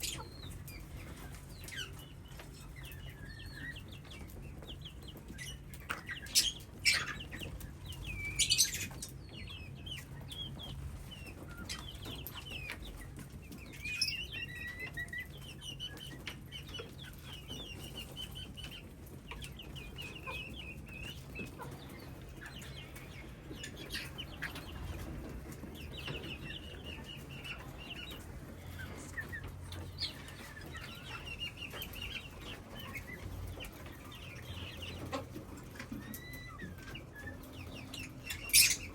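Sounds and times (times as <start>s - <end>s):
parrots chirping: 36.0s - 38.9s.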